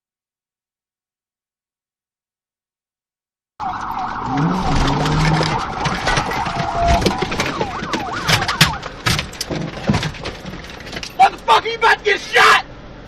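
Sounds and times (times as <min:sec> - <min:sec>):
police siren wailing: 0:03.6 - 0:10.2
engine and road noise: 0:03.6 - 0:13.0.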